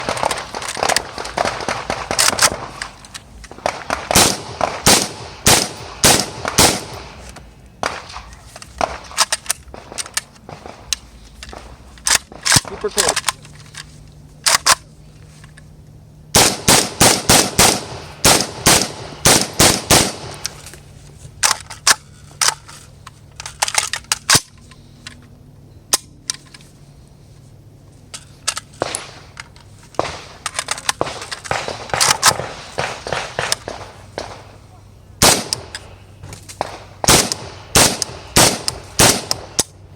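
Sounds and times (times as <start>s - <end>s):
rifle shots: 0.0s - 10.9s, 16.3s - 20.6s, 28.8s - 29.4s, 30.0s - 34.6s, 35.2s - 36.0s, 36.6s - 39.8s.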